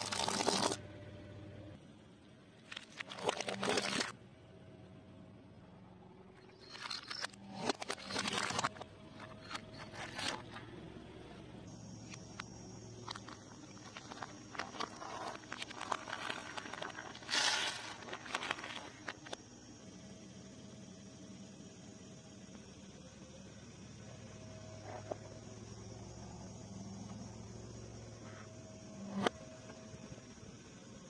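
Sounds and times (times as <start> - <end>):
crunchy bites and chewing: 2.6 - 4.1, 12.1 - 19.3.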